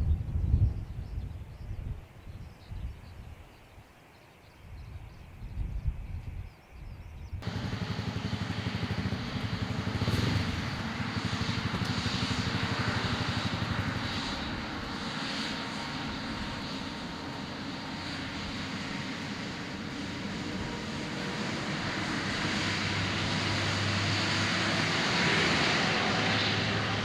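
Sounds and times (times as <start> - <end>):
jet engines at takeoff power: 7.4 - 27.0.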